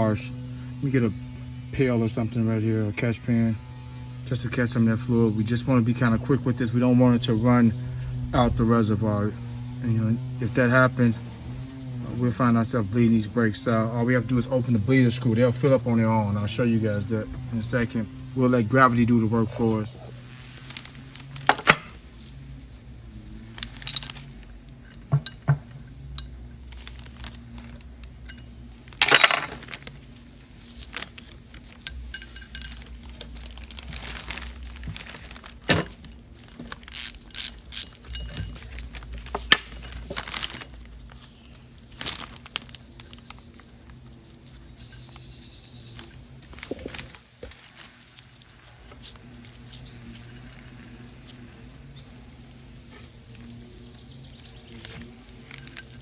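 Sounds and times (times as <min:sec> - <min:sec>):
metal tools clinking and clanking: 0:21.5 - 0:21.9, 0:23.8 - 0:24.2, 0:29.0 - 0:29.8, 0:31.9 - 0:32.9, 0:37.0 - 0:38.7.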